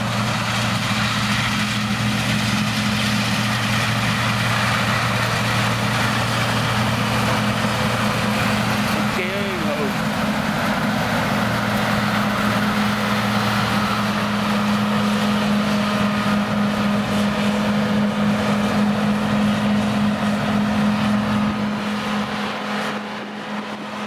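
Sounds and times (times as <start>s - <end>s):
engine running steadily: 0.0s - 24.0s
even rushing noise: 0.0s - 24.0s.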